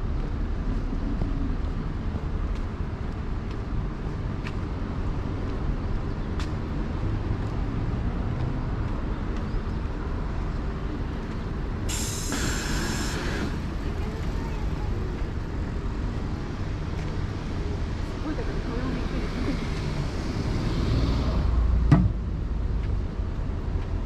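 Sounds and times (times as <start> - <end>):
low rumble of passing traffic: 0.0 - 24.0
sudden hiss: 11.9 - 13.6.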